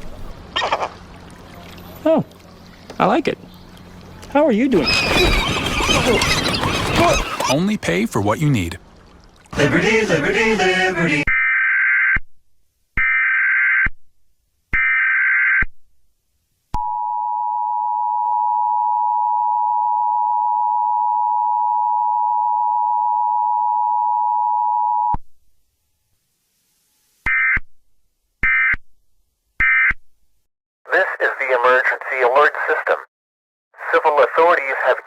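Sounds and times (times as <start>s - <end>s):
screeching digital data bursts: 4.8s - 7.6s.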